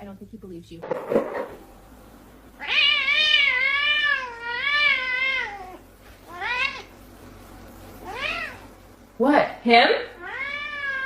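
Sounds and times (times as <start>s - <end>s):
cat meowing: 2.6s - 6.9s, 8.0s - 8.7s, 10.2s - 11.0s.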